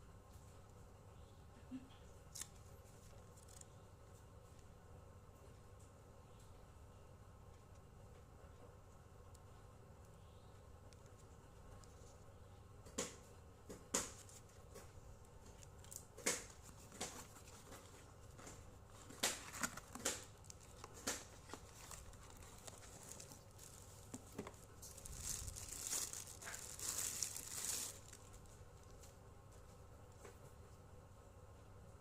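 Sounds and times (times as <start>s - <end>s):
packaging crinkling and rustling: 14.0s - 29.2s.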